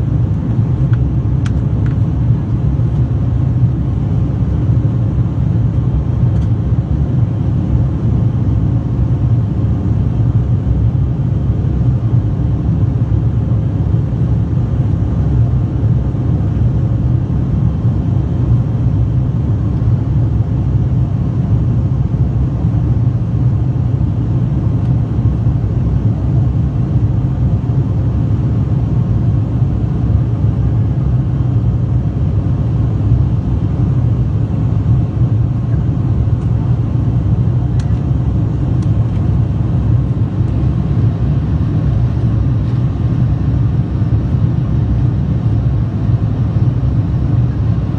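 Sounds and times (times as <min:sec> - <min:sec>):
turboprop engines droning: 0:00.0 - 0:47.9.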